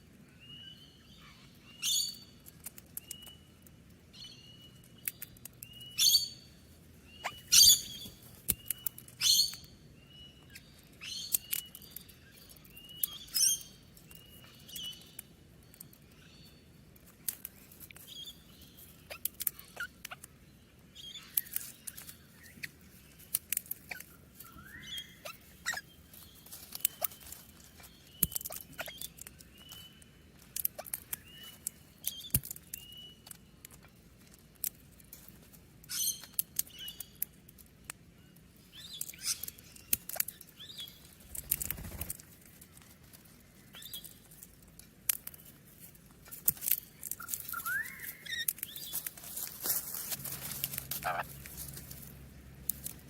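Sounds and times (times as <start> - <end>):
parrots chirping and chattering: 0.4 - 35.1, 35.8 - 53.0.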